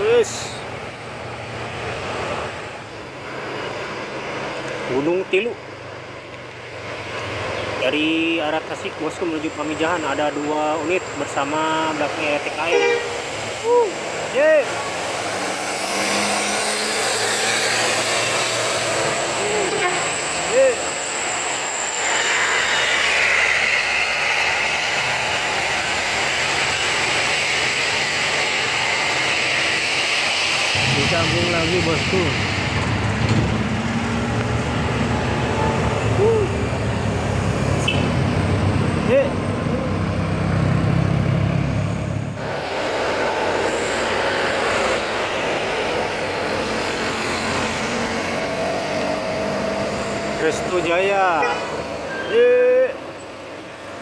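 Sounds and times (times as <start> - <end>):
road vehicles passing: 0.0 - 54.0.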